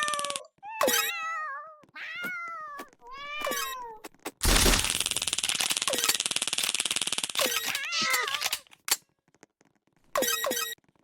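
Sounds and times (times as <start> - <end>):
cat meowing: 7.7 - 8.4.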